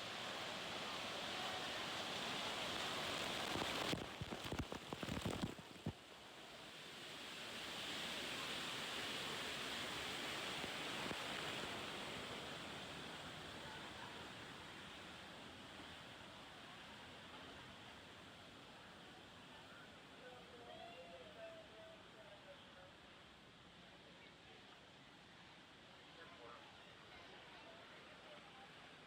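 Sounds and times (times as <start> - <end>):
rushing water: 0.0 - 13.6.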